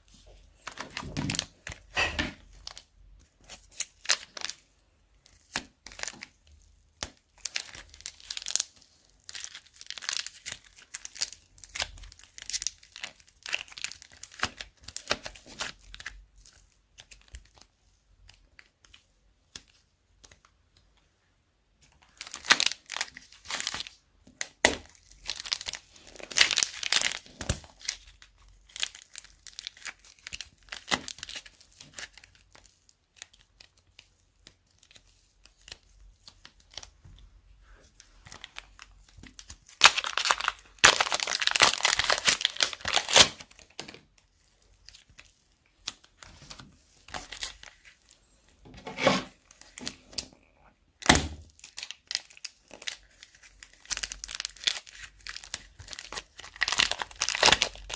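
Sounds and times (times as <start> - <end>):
slime squeezed in plastic bags: 5.2 - 17.6, 22.0 - 33.9, 37.6 - 48.1, 50.9 - 57.9.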